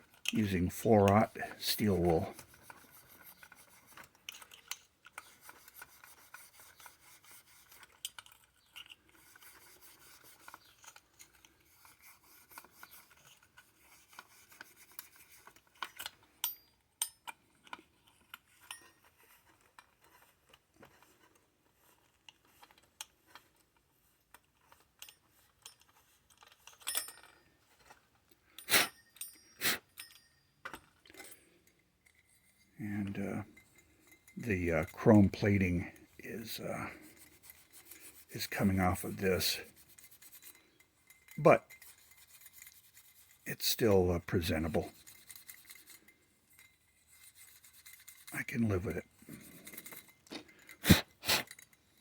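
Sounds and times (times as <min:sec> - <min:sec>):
metallic clinks: 0:15.8 - 0:19.9, 0:24.6 - 0:37.3, 0:40.4 - 0:42.8, 0:44.8 - 0:52.0.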